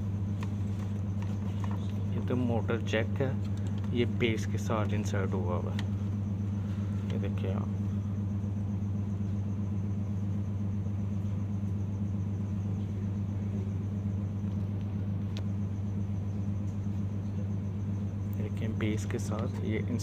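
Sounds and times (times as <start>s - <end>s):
air conditioner fan motor hum: 0.0s - 20.0s.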